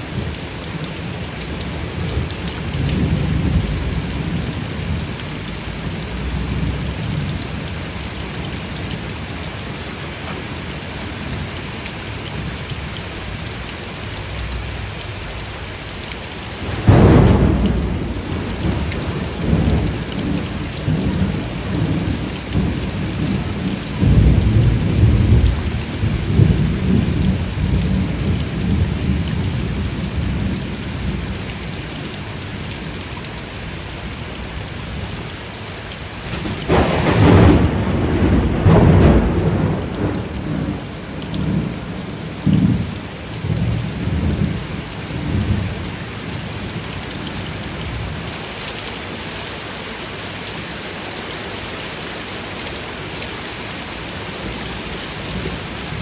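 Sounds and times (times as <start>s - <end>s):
steady rain: 0.0s - 56.0s
rolling thunder rumbles: 2.0s - 7.5s, 16.5s - 31.5s, 36.2s - 45.9s
thunder clap: 16.6s - 29.5s, 36.3s - 44.5s.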